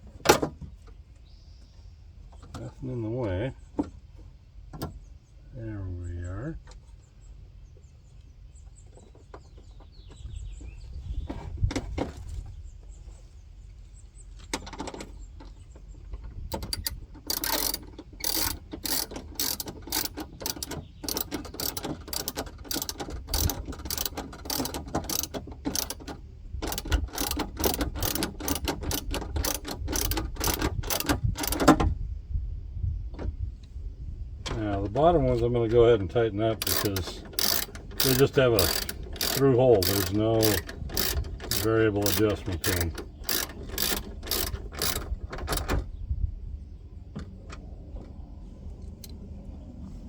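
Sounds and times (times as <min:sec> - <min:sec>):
ratchet wrench clicking: 0:16.6 - 0:31.6, 0:36.6 - 0:45.2.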